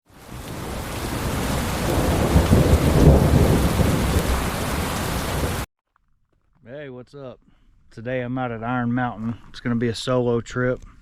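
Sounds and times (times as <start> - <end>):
steady rain: 0.1 - 5.7
rolling thunder rumble: 0.3 - 5.6.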